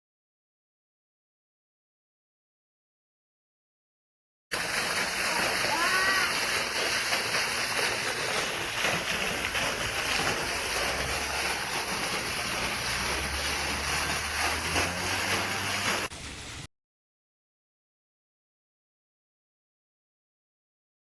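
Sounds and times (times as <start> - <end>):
water pouring from pump: 4.5 - 16.7.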